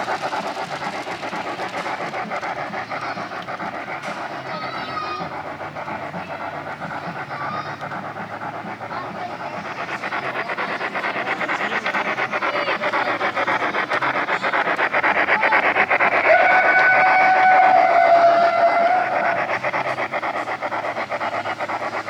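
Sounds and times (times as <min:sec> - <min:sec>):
model train wheels clattering: 0:00.0 - 0:22.0.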